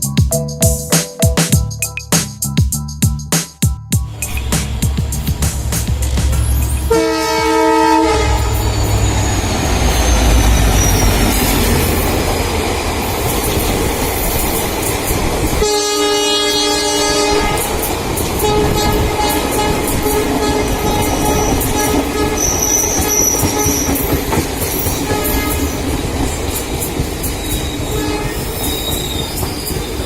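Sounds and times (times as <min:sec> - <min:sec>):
train wheels rumbling and clattering: 0:04.0 - 0:30.0
locomotive horn blasts: 0:06.9 - 0:09.0, 0:15.6 - 0:17.8, 0:18.4 - 0:23.9, 0:25.0 - 0:25.8, 0:27.9 - 0:28.6.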